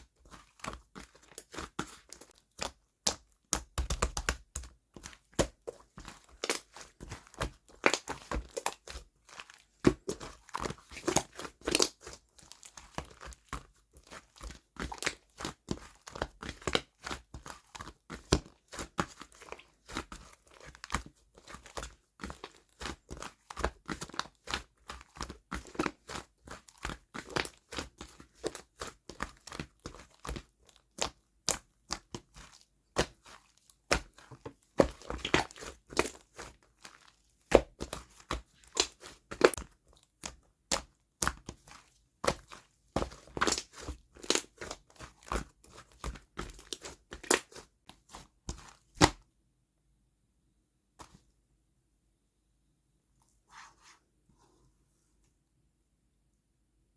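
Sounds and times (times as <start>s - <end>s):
slime crackling and popping: 9.8s - 13.5s, 33.0s - 36.5s, 40.2s - 47.6s.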